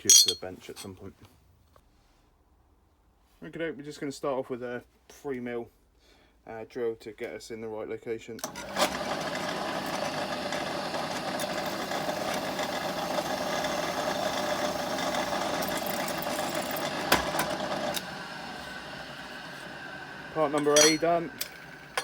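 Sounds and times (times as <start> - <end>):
electric drill boring metal: 8.4 - 22.0.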